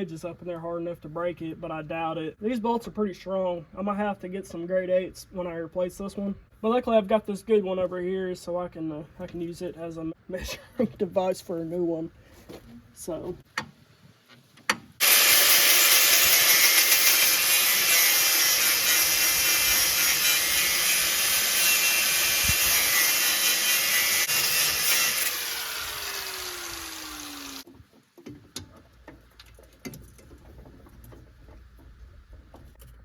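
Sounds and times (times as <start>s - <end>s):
grinder motor winding down: 15.0s - 27.6s
angle grinder cutting metal: 15.0s - 27.7s.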